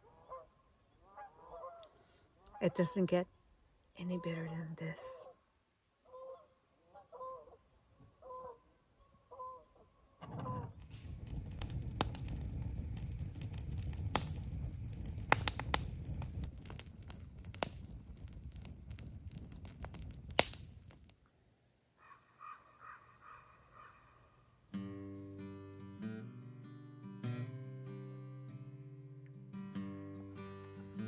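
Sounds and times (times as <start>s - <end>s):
rustling and crackling: 10.2s - 21.4s
sharp snaps: 10.8s - 21.2s
bird clucking: 22.0s - 24.2s.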